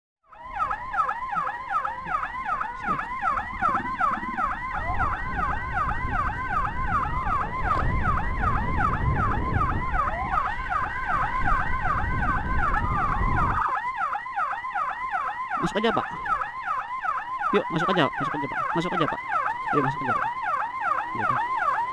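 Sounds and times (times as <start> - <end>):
steady high siren tone: 0.2 - 21.9
electronic siren yelping: 0.3 - 21.9
road rumble: 0.4 - 13.7.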